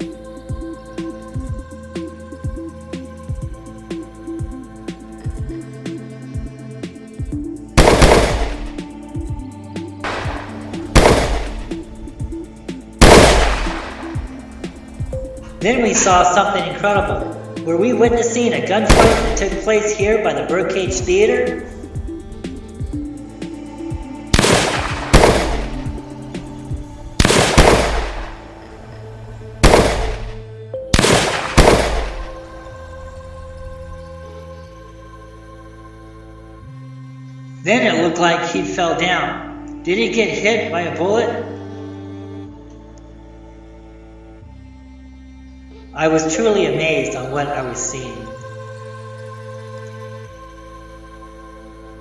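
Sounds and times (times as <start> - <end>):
background music: 0.0 - 52.0
gunshots with echoing tail: 7.8 - 8.9, 10.1 - 16.2, 18.9 - 20.0, 24.3 - 34.0.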